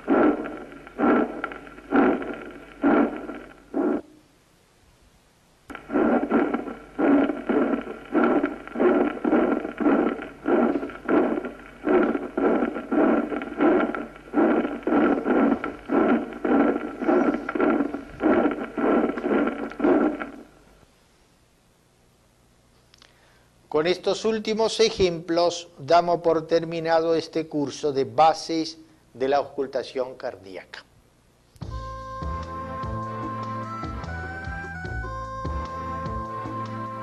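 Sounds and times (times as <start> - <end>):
heartbeat with murmur swishes: 0.0 - 4.2, 5.7 - 20.6.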